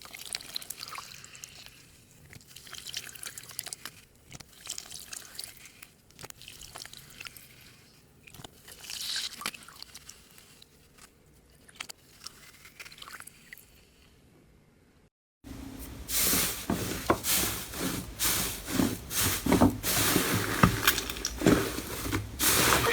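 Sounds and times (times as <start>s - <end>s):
slime squishing and crackling: 0.0s - 13.8s.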